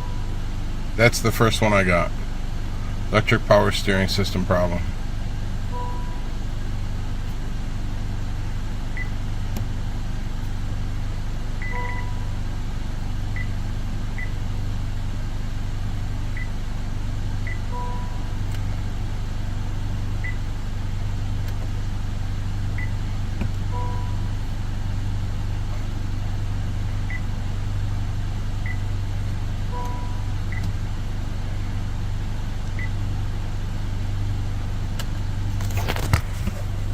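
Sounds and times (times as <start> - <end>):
low engine hum: 0.0 - 36.9
dashboard warning beep: 5.6 - 6.3, 11.6 - 12.2, 17.4 - 18.2, 23.7 - 24.3, 28.6 - 28.9, 29.7 - 30.8.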